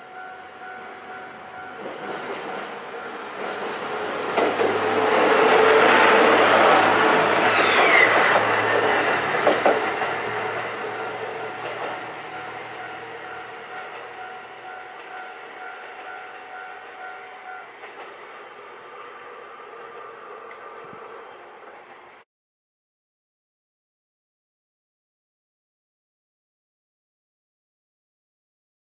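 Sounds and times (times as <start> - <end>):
crossing warning bell ringing: 0.0 - 22.2
diesel railcar engine drone: 0.0 - 22.2
wheels clacking over rail joints: 0.0 - 22.2.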